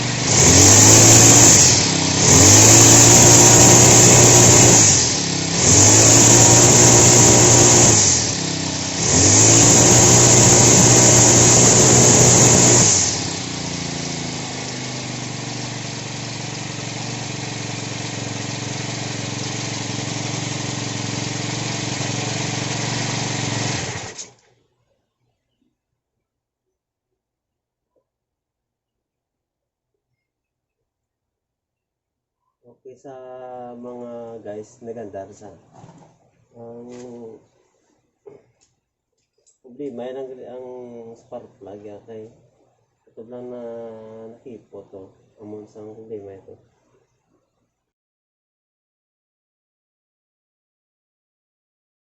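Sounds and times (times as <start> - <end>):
brush cutter engine revving: 0.0 - 24.4.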